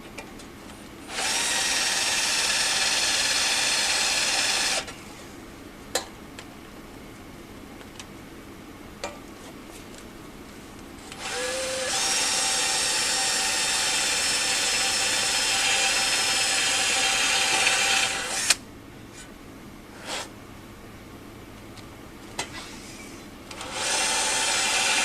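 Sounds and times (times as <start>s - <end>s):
electric drill drilling metal: 1.1s - 4.9s, 11.2s - 18.6s, 23.6s - 25.0s.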